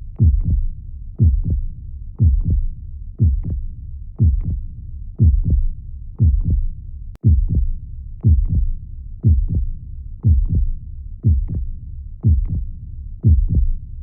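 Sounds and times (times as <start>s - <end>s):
steady low rumble: 0.0s - 14.0s
heartbeat thumps: 0.2s - 13.8s.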